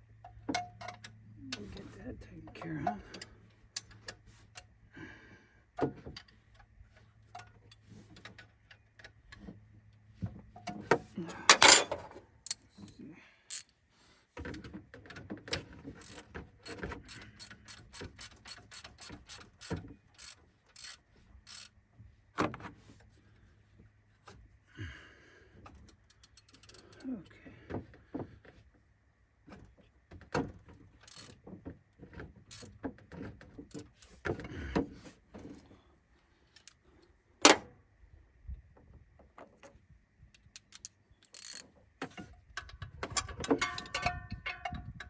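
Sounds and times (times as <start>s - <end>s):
ratchet wrench clicking: 13.5s - 13.7s, 16.0s - 21.7s, 26.1s - 26.9s, 31.0s - 31.4s, 32.5s - 32.7s, 40.4s - 41.6s
metallic clank: 43.4s - 44.9s.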